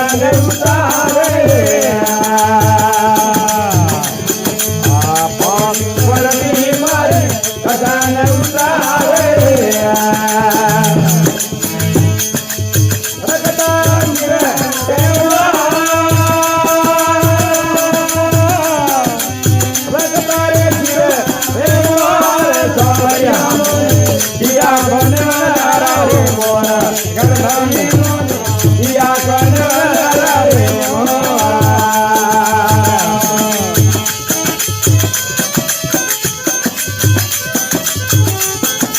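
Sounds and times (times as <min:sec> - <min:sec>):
rattling hand percussion: 0:00.0 - 0:38.9
gliding vocal line: 0:13.2 - 0:34.0.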